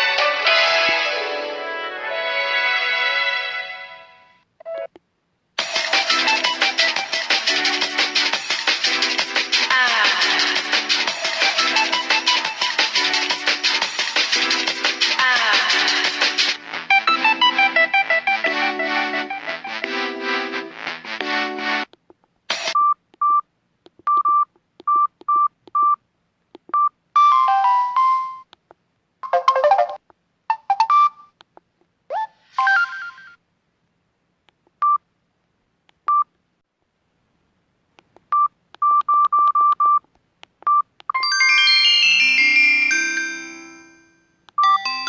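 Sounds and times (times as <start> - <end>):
phone beeps: 4.6 - 4.9, 22.8 - 23.4, 24.1 - 26.0, 26.7 - 28.4, 29.2 - 31.3, 36.1 - 36.3, 38.3 - 40.0, 40.6 - 41.2, 44.6 - 44.9
phone melodic tones: 29.2 - 31.3, 44.6 - 45.0.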